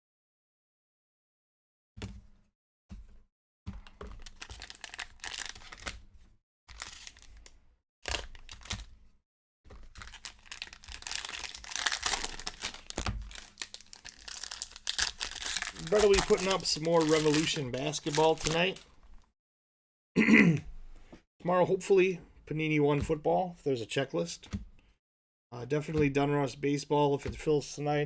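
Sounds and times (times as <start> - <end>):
card pack wrappers tearing: 4.2 - 6.0, 6.7 - 7.5, 8.1 - 8.9, 9.9 - 19.0.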